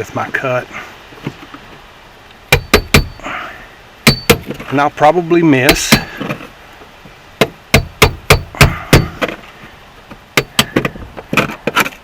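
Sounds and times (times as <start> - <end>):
tool striking metal: 2.5 - 3.2, 4.0 - 4.6, 5.7 - 6.1, 7.4 - 9.3.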